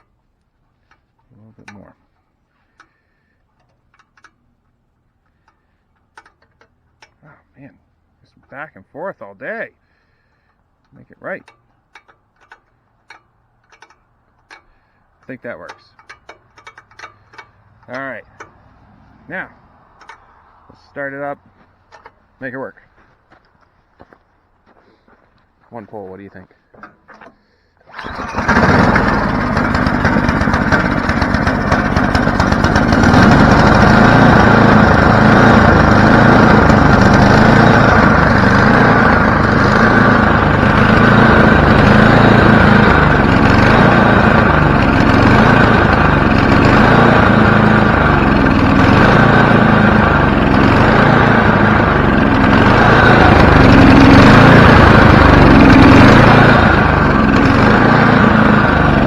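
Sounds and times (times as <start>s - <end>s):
snowblower engine running: 27.9s - 59.0s.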